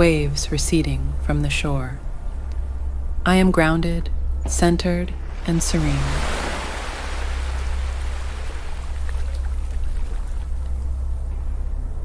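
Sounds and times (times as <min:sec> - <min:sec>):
steady low hum: 0:00.0 - 0:12.0
ocean waves washing on beach: 0:05.2 - 0:10.4.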